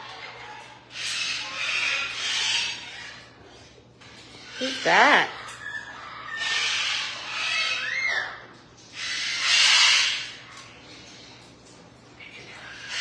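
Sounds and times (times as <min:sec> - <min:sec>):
parrot squawks: 0:00.0 - 0:03.4, 0:04.4 - 0:10.6.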